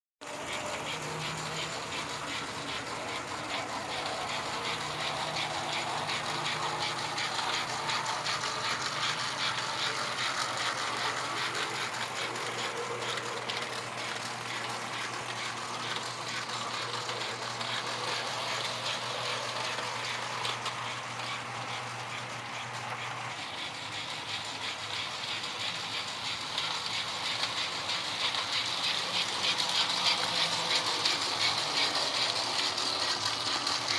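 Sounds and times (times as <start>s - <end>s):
model train motor whirring and clicking: 0.2s - 33.9s.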